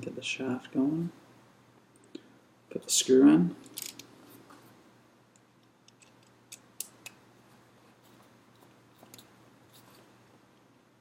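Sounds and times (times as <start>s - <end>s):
clicks of small parts handled: 3.6s - 4.1s, 5.4s - 7.2s.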